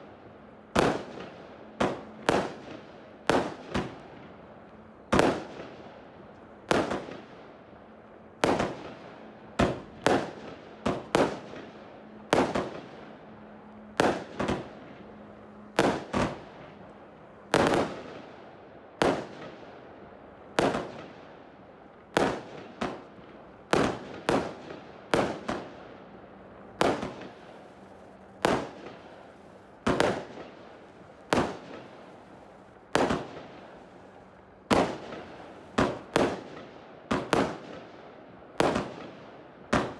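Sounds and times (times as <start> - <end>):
firework bangs: 0.7 - 4.4, 5.0 - 5.9, 6.7 - 7.4, 8.4 - 13.1, 13.9 - 15.0, 15.7 - 16.8, 17.5 - 18.3, 23.7 - 25.8, 26.7 - 33.8, 34.6 - 37.9, 38.6 - 39.9.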